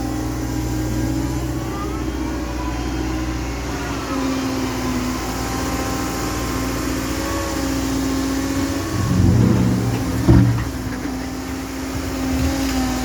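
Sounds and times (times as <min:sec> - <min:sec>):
excavator diesel engine running: 0:08.8 - 0:13.0.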